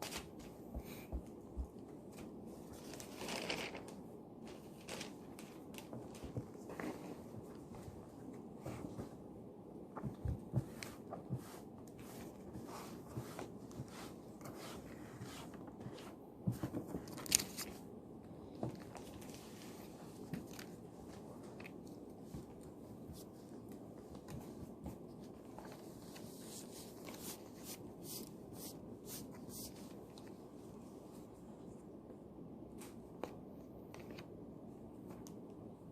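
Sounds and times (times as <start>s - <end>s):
paper rustling: 2.1s - 7.3s, 12.0s - 17.8s, 18.8s - 30.3s.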